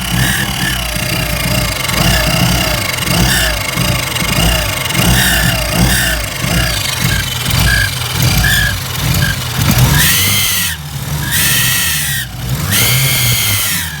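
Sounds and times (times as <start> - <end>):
car engine revving: 0.0 - 14.0
high screech: 5.1 - 14.0.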